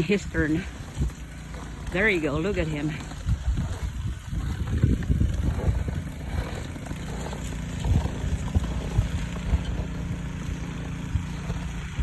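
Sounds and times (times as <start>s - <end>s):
snow blower engine running: 0.0s - 12.0s.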